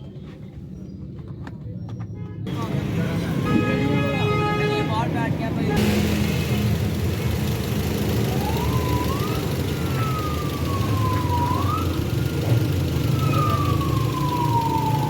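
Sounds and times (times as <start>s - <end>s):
car engine idling with misfire: 5.7s - 15.0s
siren-like wailing tone: 8.3s - 12.0s, 13.1s - 15.0s.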